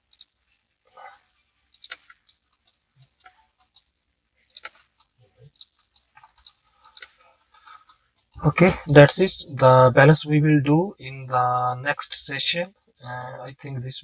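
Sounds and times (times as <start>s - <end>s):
computer mouse clicks: 1.7s - 3.9s, 4.5s - 8.4s.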